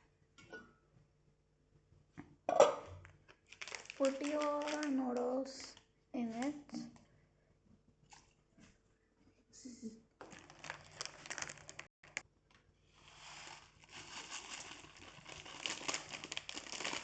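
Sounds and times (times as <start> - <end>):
plastic packaging crinkling: 3.3 - 5.7, 10.2 - 12.2, 13.1 - 17.0.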